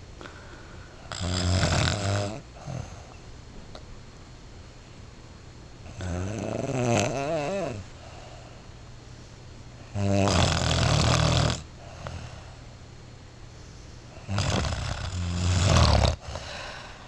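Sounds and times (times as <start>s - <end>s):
person snoring loudly: 1.1s - 3.0s, 5.9s - 7.8s, 9.9s - 12.3s, 14.2s - 16.9s.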